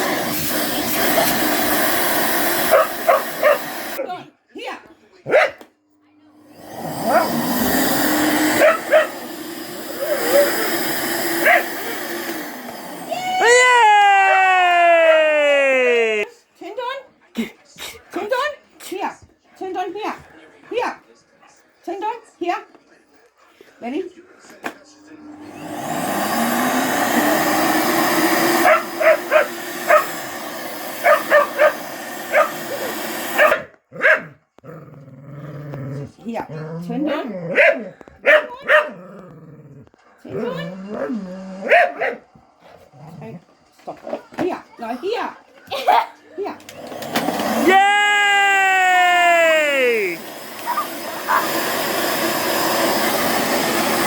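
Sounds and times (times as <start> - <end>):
vacuum cleaner humming: 0.0 - 4.0, 6.4 - 16.2, 25.1 - 33.5, 46.6 - 54.0
dog barking: 2.7 - 3.8, 5.2 - 5.7, 8.6 - 9.2, 11.4 - 11.7, 28.7 - 30.2, 31.0 - 32.8, 33.4 - 34.4, 37.1 - 39.0, 41.6 - 42.3, 50.6 - 51.6.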